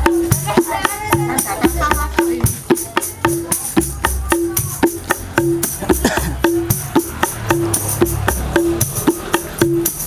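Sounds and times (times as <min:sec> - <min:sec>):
low bass: 0:00.0 - 0:10.0
tambourine and drum rhythm: 0:00.0 - 0:10.0.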